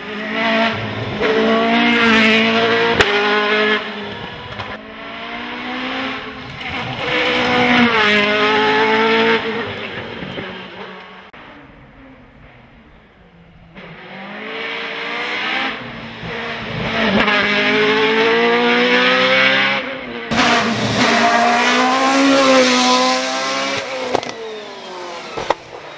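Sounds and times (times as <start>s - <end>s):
race car engine passing: 13.7s - 25.9s
engine exhaust pops: 24.1s - 24.4s.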